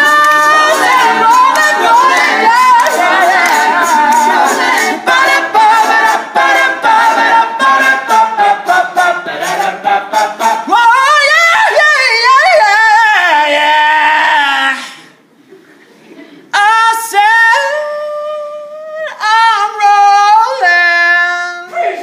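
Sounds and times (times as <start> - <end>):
men singing a cappella: 0.0 - 15.0
vocal percussive beat: 0.0 - 15.2.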